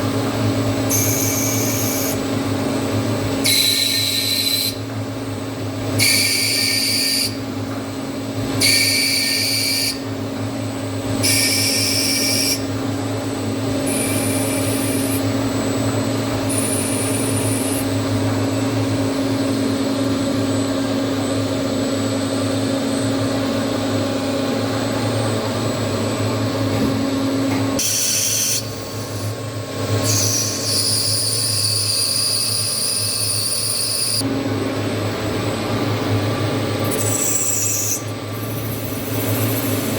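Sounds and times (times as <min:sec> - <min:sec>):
motor and spindle hum: 0:00.0 - 0:39.9
high-pitched cutting whines: 0:00.9 - 0:02.2, 0:03.4 - 0:04.8, 0:08.6 - 0:10.0, 0:11.2 - 0:12.7, 0:13.8 - 0:15.3, 0:16.5 - 0:18.0, 0:27.8 - 0:34.2, 0:36.8 - 0:39.9.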